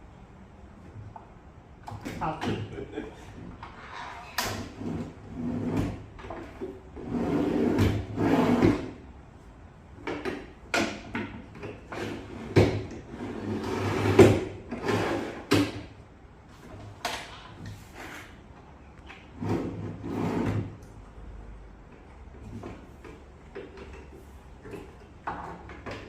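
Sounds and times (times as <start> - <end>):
wood sliding and scraping: 19.2 - 20.8.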